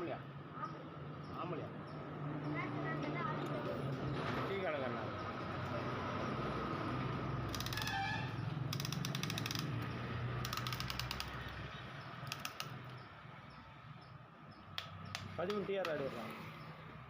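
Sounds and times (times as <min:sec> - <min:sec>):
ratchet wrench clicking: 0:07.5 - 0:11.6, 0:12.2 - 0:13.0.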